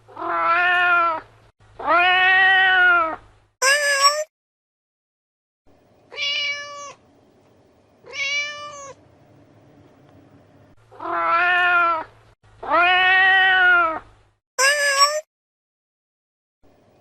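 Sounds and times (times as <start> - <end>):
cats meowing: 0.1 - 1.2, 1.8 - 4.3, 6.1 - 7.0, 8.0 - 9.0, 10.9 - 15.2.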